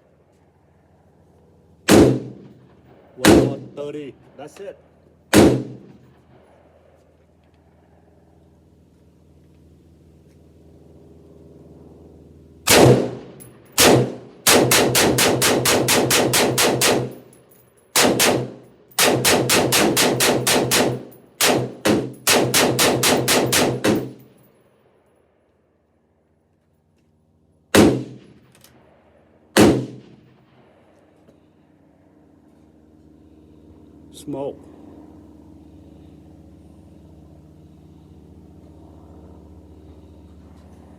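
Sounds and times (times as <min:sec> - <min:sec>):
low steady hum: 0:00.0 - 0:40.9
rifle shots: 0:01.9 - 0:03.8, 0:05.3 - 0:06.0, 0:12.7 - 0:17.3, 0:17.9 - 0:24.3, 0:27.7 - 0:28.5, 0:29.6 - 0:30.5.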